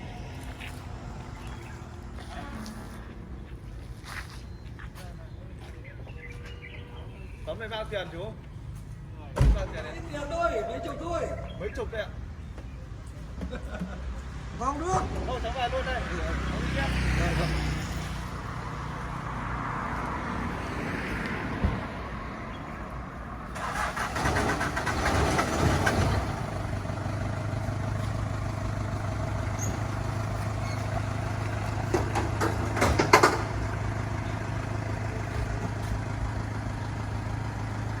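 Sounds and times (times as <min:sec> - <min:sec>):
vehicle engine starting and idling: 0:09.4 - 0:12.7, 0:21.7 - 0:38.0.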